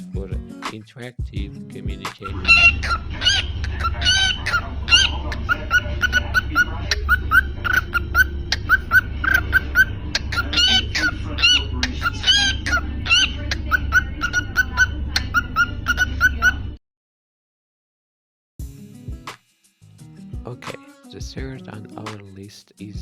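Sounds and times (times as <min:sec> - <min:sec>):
birds chirping: 0:01.8 - 0:16.8
higher longer bird calls: 0:02.2 - 0:16.3
steady low hum: 0:02.3 - 0:16.8.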